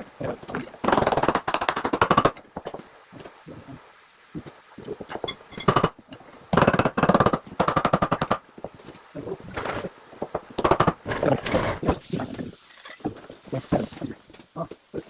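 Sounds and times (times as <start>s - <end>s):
rapid mechanical hammering clicks: 0.8s - 2.5s, 6.6s - 8.4s, 10.6s - 11.0s.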